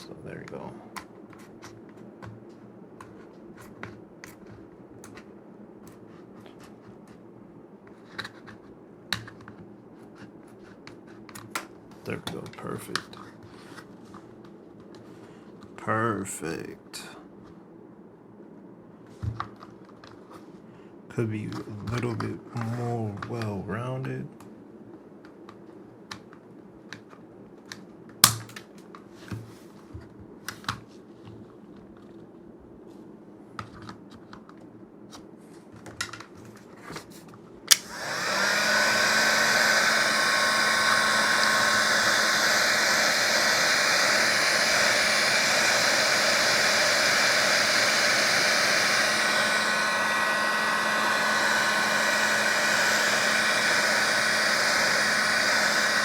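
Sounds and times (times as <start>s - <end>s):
heat gun blowing: 37.7s - 56.0s
heat gun switch click: 37.7s - 56.0s.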